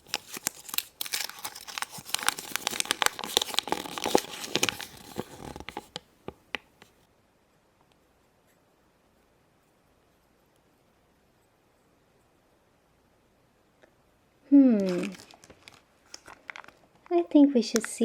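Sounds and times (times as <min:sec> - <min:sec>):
paper crinkling and rustling: 0:00.0 - 0:07.0, 0:14.8 - 0:18.0.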